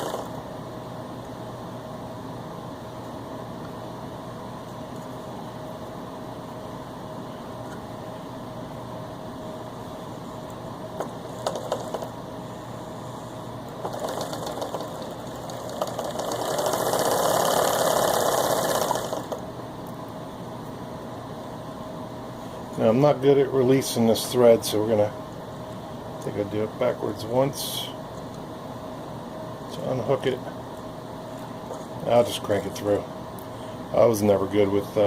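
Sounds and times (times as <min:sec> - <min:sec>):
sewing machine stitching: 0:00.0 - 0:00.4, 0:11.3 - 0:12.2, 0:13.8 - 0:19.4.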